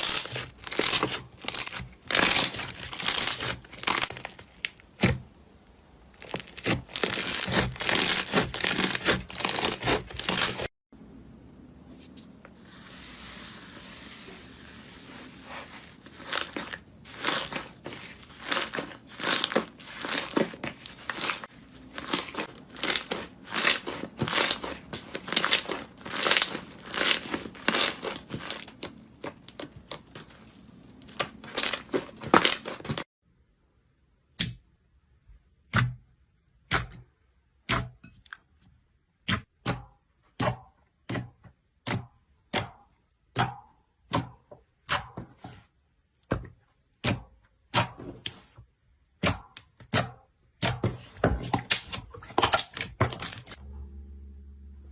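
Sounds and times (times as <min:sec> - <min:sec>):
slime crackling and popping: 0:00.0 - 0:05.2, 0:06.1 - 0:10.7, 0:16.2 - 0:33.0.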